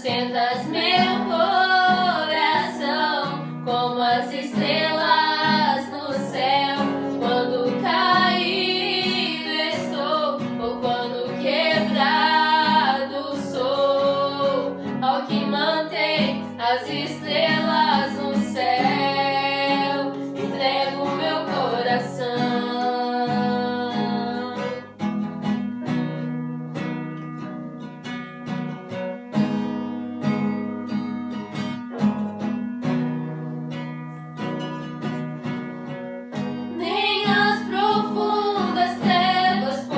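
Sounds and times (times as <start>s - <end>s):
women singing: 0.0s - 24.9s, 36.7s - 39.9s
strummed acoustic guitar: 0.0s - 39.9s.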